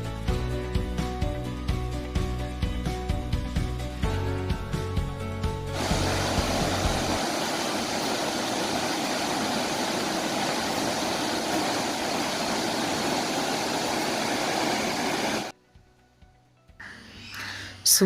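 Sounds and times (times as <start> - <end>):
waterfall roaring: 5.8 - 15.5.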